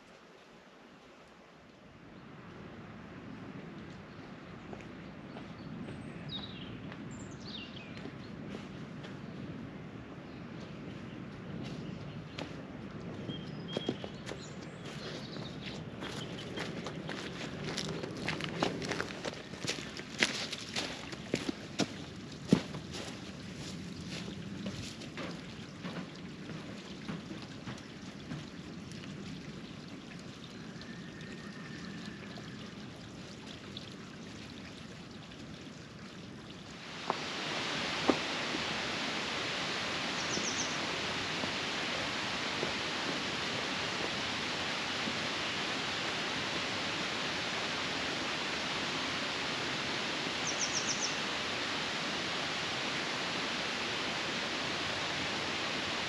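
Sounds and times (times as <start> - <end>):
stream water flowing: 14.4 - 56.0.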